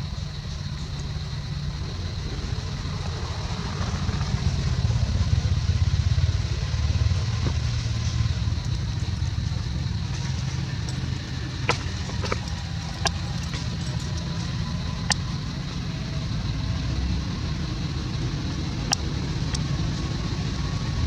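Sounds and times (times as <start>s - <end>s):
vehicle engine rumbling: 0.0s - 21.0s
sharp clicks: 18.8s - 19.8s.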